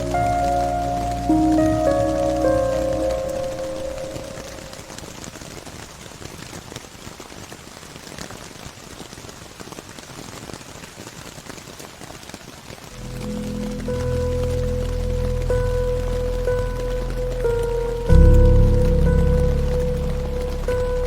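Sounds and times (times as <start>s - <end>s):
slowed ambient music: 0.0s - 5.1s, 13.0s - 21.0s
steady rain pattering: 0.0s - 21.0s.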